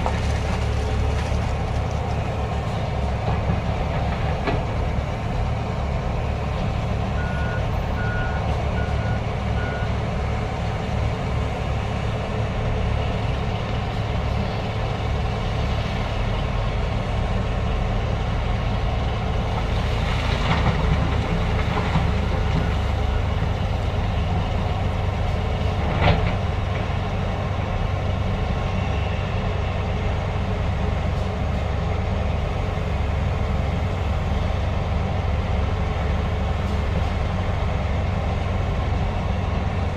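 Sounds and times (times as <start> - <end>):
diesel machinery running: 0.0 - 39.9
reversing alarm beeping: 7.2 - 9.9.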